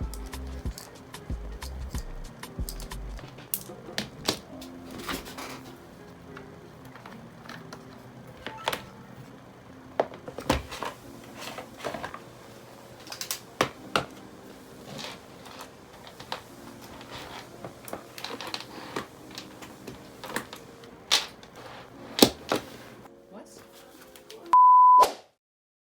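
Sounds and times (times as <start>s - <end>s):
small objects clicking and knocking: 0.0s - 4.4s.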